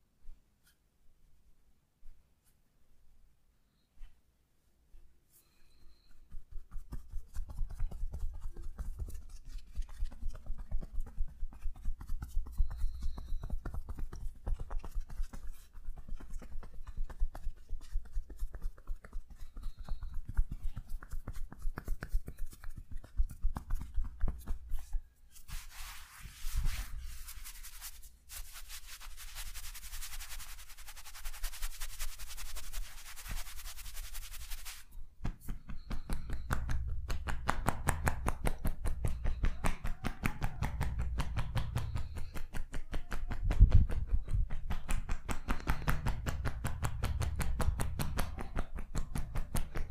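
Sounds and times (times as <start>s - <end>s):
hands rubbing on skin: 6.1s - 34.9s
tapping massage strokes: 6.1s - 49.9s.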